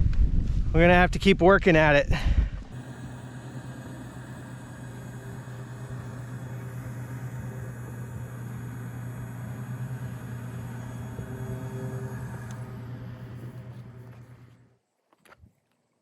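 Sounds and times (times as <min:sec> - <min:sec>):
electric air pump motor hum: 0:02.6 - 0:14.8
air hissing: 0:02.7 - 0:14.6.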